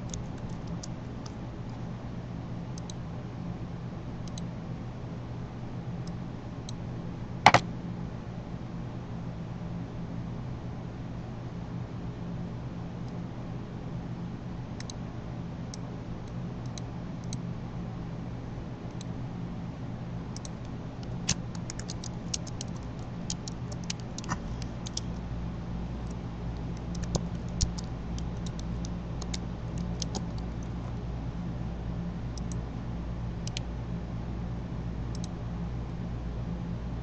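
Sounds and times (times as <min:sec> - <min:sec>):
steady low hum: 0:00.0 - 0:37.0
computer keyboard typing: 0:20.4 - 0:25.3, 0:26.0 - 0:31.0.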